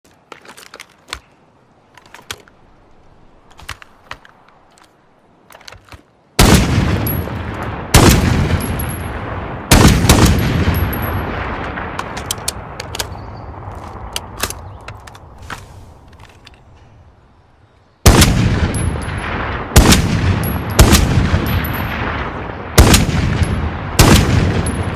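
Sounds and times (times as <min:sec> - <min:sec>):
rifle shots with long echo: 0:06.4 - 0:12.8, 0:18.0 - 0:24.9.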